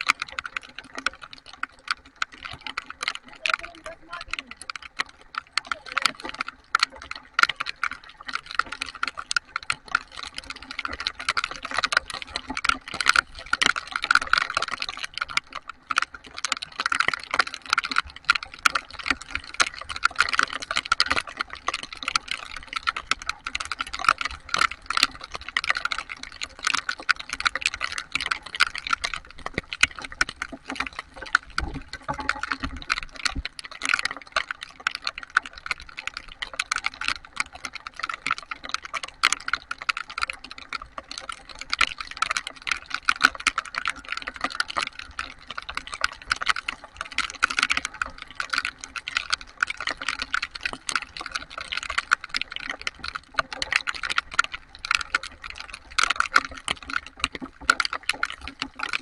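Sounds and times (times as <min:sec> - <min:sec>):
heavy rain patter: 0:02.4 - 0:39.7.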